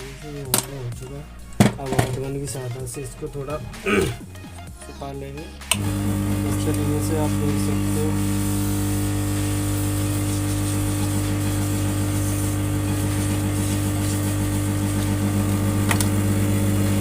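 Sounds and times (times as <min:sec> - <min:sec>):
hot-air gun blowing: 0:05.6 - 0:17.0.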